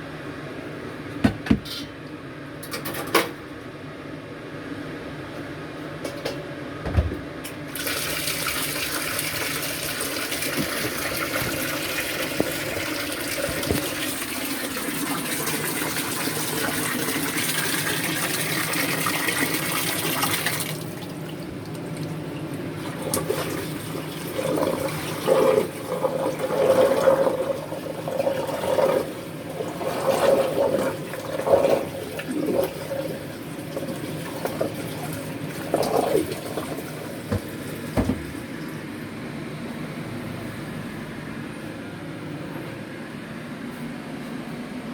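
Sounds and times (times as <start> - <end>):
water running from a tap: 7.7 - 22.1
water splashing and sloshing: 7.8 - 14.6, 28.2 - 33.1, 33.7 - 38.8.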